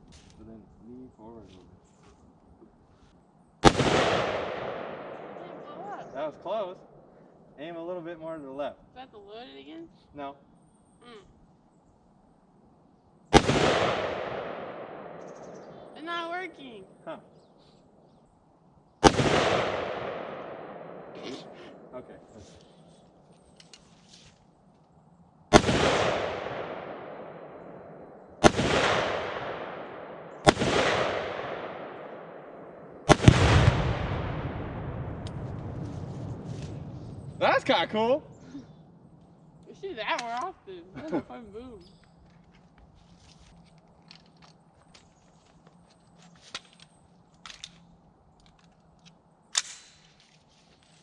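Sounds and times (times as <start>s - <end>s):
sharp crack: 3.6s - 6.7s, 13.3s - 16.0s, 19.0s - 22.6s, 25.5s - 38.1s, 48.6s - 50.4s
rifle shots echoing: 3.6s - 7.2s, 13.3s - 16.6s, 19.0s - 22.1s, 25.5s - 37.4s, 49.5s - 50.1s
deep explosion boom: 33.1s - 37.4s.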